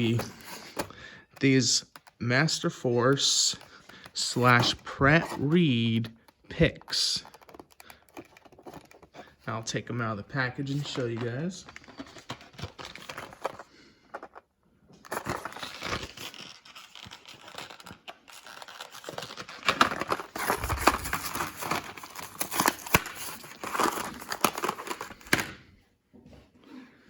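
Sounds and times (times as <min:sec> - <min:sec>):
plastic packaging tearing and crinkling: 0:15.1 - 0:25.5.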